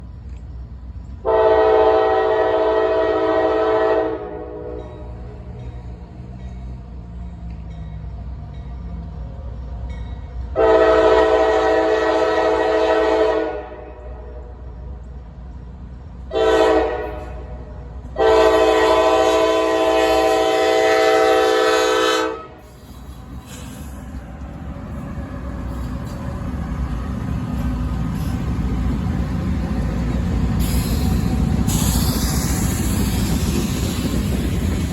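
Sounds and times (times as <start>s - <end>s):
train rumbling: 0.0s - 34.9s
locomotive air horn blasts: 1.2s - 5.0s, 10.6s - 14.5s, 16.3s - 17.6s, 18.2s - 22.8s
hiss: 22.6s - 24.2s, 30.5s - 34.9s.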